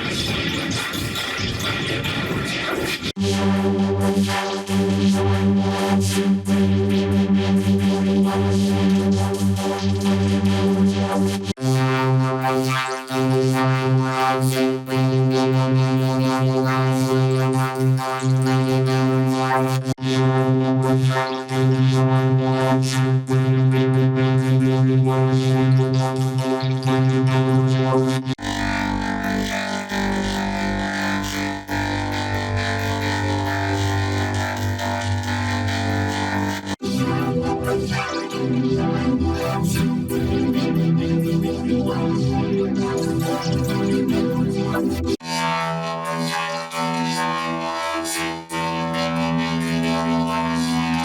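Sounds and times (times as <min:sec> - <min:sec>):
electronic music with synthesizer: 0:00.0 - 0:51.0.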